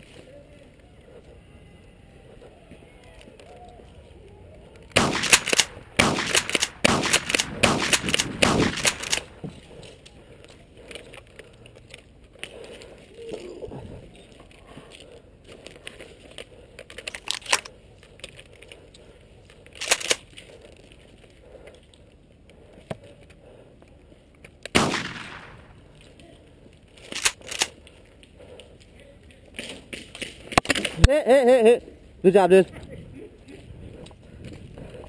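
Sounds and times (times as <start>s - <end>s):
airsoft guns popping: 4.9s - 9.6s, 17.0s - 17.7s, 19.8s - 20.3s, 24.7s - 26.1s, 27.0s - 27.8s.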